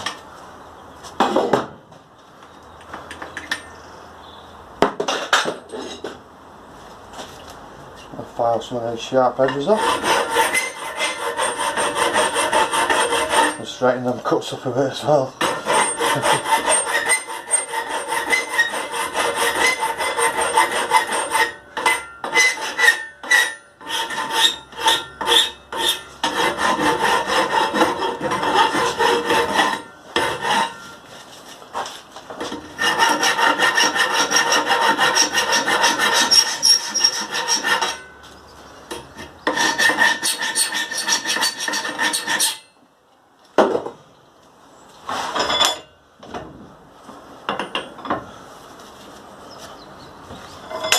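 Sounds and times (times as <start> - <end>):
hand file rasping on metal pipe: 9.4 - 13.8, 15.4 - 30.9, 32.7 - 38.1, 39.2 - 42.7.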